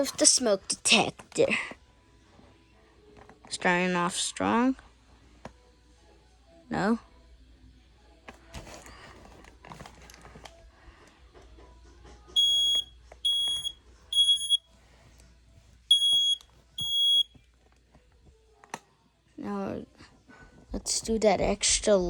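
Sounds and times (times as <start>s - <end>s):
faint clicks and handling: 8.3s - 10.6s
smoke detector alarm beeps: 12.4s - 14.6s, 15.9s - 17.3s.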